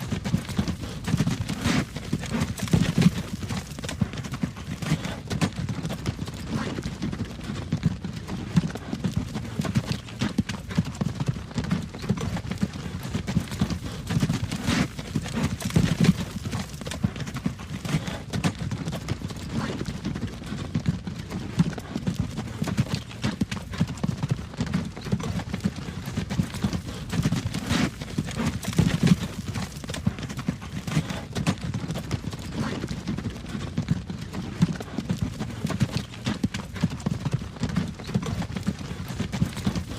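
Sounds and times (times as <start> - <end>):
horse hooves clip-clopping: 0.0 - 39.9
low rumble of wagon: 0.0 - 39.9.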